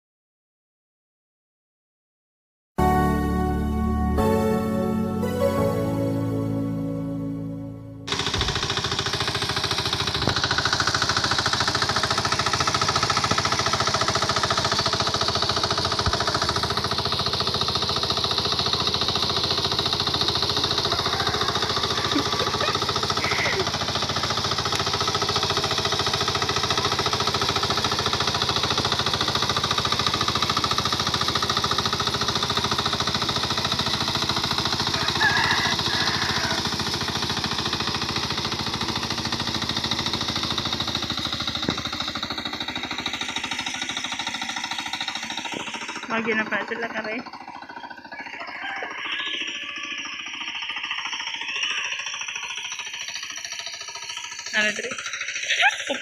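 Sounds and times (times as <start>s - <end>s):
small engine knocking: 8.1s - 56.0s.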